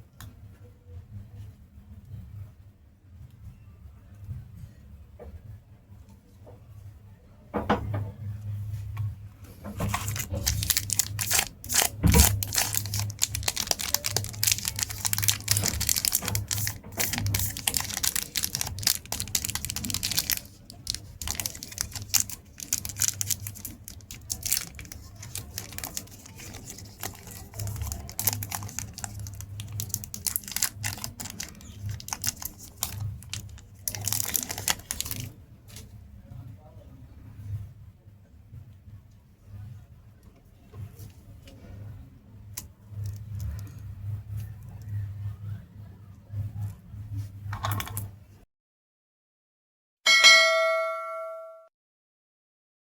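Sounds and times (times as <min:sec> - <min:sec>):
wrappers crinkling and tearing: 0:09.8 - 0:35.4, 0:42.6 - 0:43.8.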